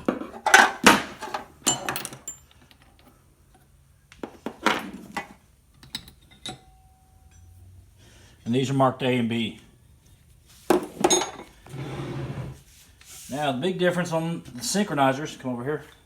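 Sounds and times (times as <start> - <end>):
metal parts clinking and clanking: 0.0 - 3.2, 4.4 - 7.6, 10.8 - 11.6.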